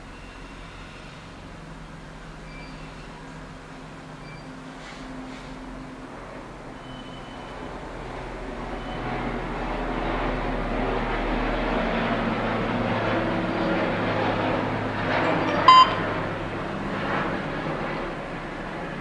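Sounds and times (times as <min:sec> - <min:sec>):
alarm panel electronic beep: 0:15.2 - 0:16.1.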